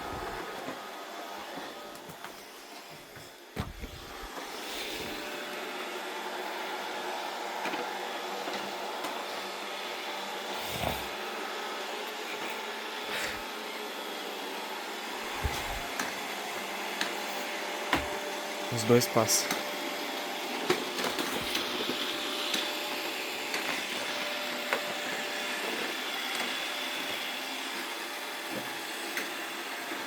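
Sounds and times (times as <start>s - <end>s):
robot vacuum cleaners whirring: 0.0s - 30.0s.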